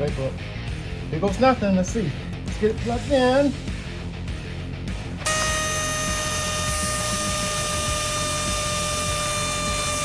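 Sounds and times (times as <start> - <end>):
electric tire inflator running: 5.2 - 10.0.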